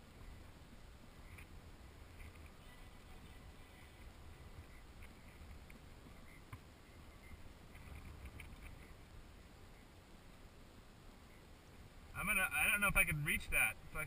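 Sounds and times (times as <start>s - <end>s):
faint low rumble: 0.0s - 14.0s
faint ticks: 1.2s - 9.1s.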